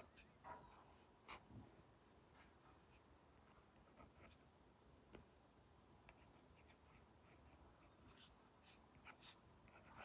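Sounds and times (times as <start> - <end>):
stylus scratching on tablet screen: 6.1 - 10.0.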